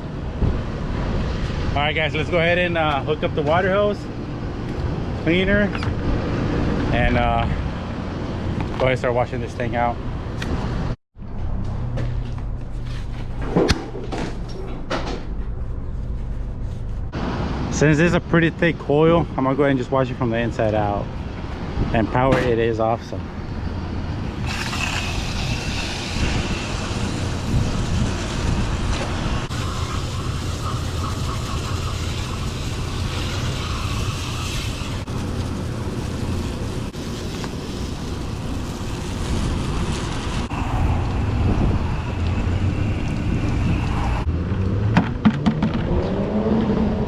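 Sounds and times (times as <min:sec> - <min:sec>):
steady low rumble: 0:00.0 - 0:44.4
hissing water spray: 0:24.3 - 0:44.3.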